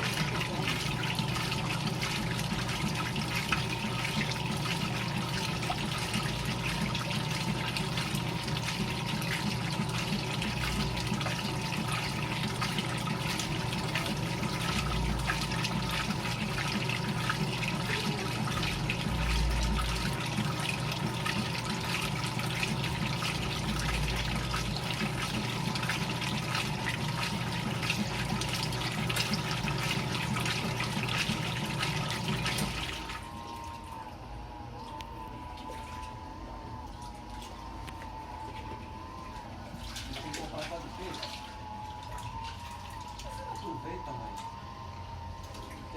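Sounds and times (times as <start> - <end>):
washing machine motor hum: 0.0 - 45.9
water rushing and splashing: 37.0 - 44.4.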